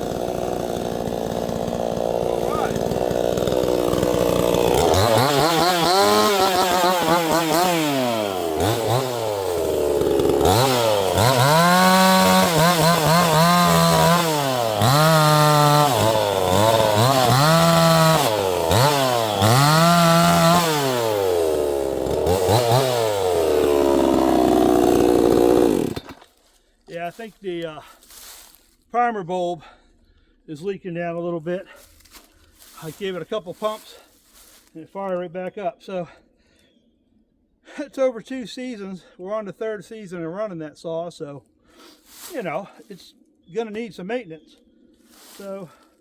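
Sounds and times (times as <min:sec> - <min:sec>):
chainsaw engine revving: 0:00.0 - 0:26.2.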